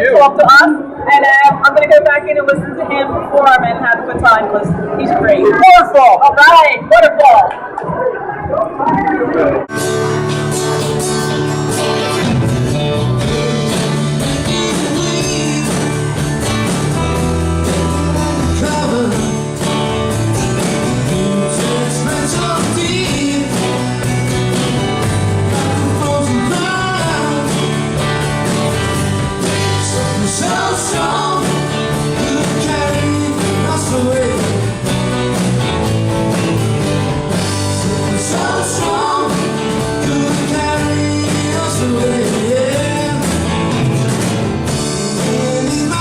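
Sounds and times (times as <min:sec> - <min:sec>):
drums: 0:00.0 - 0:46.0
keyboards: 0:00.0 - 0:46.0
bass guitar: 0:08.8 - 0:46.0
electric guitar: 0:08.8 - 0:46.0
person singing: 0:12.8 - 0:16.3, 0:17.6 - 0:19.6, 0:20.6 - 0:28.0, 0:29.5 - 0:34.9, 0:37.5 - 0:43.5, 0:44.7 - 0:46.0.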